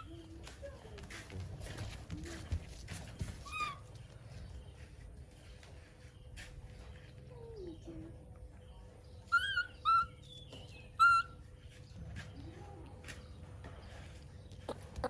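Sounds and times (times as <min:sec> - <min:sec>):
baby monkey squeaking: 0:03.4 - 0:03.9, 0:09.3 - 0:11.5.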